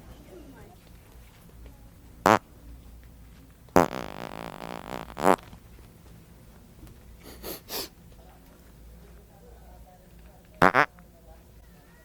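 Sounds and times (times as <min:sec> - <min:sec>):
prank fart noises: 0:03.8 - 0:05.5, 0:10.6 - 0:10.9.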